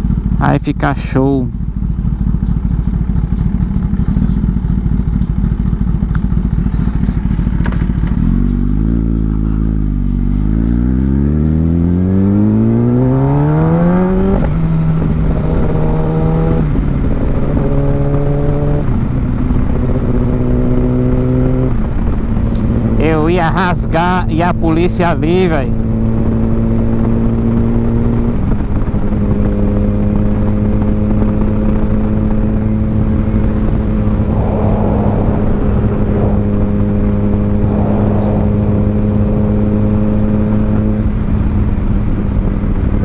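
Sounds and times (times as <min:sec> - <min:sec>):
sport bike engine revving: 0:06.5 - 0:23.1, 0:25.3 - 0:41.2.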